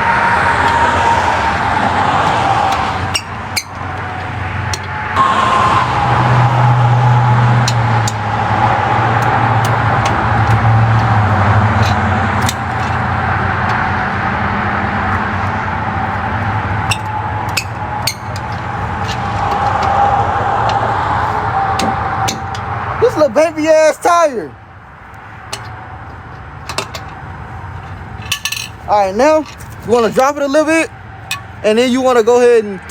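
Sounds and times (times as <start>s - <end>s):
vehicle engine running: 0.0s - 31.9s.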